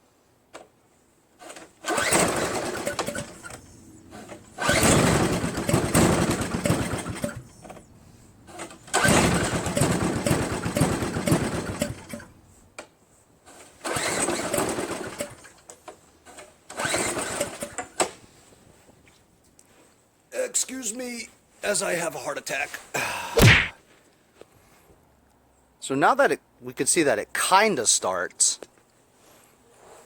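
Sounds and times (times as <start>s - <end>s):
snowblower engine starting and dying: 1.4s - 12.4s, 13.8s - 15.6s, 16.7s - 18.0s.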